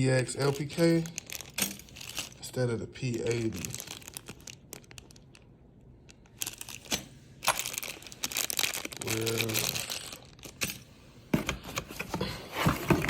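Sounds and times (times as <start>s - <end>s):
plastic packaging rustling: 0.0s - 10.8s, 11.4s - 13.0s
small metal parts clinking: 1.4s - 2.4s.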